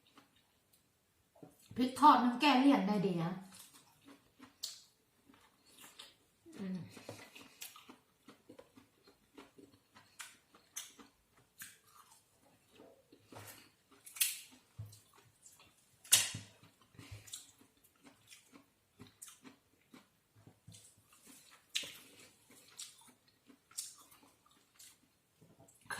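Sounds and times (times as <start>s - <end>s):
person chewing and crunching food: 0.0s - 1.7s, 3.4s - 25.9s
wet mouth smacks and clicks: 14.0s - 14.6s.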